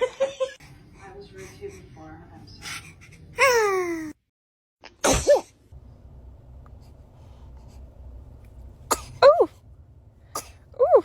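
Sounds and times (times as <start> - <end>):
baby sneezing: 5.0 - 5.6.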